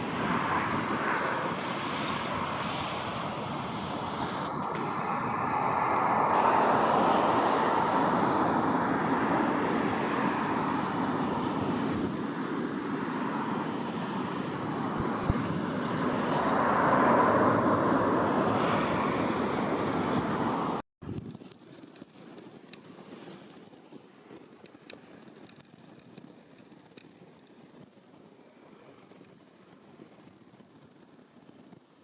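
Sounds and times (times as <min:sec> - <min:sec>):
jet engines roaring: 0:00.0 - 0:20.8.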